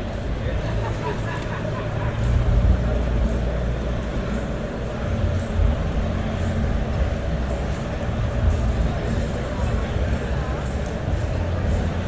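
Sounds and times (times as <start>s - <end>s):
crowded hall background noise: 0.0s - 12.0s
low rumble: 1.8s - 10.4s.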